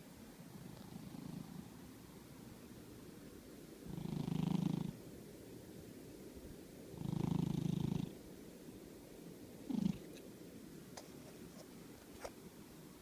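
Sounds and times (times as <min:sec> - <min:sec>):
cat purring: 0:00.5 - 0:01.9, 0:03.8 - 0:05.0, 0:06.9 - 0:08.2, 0:09.6 - 0:10.2.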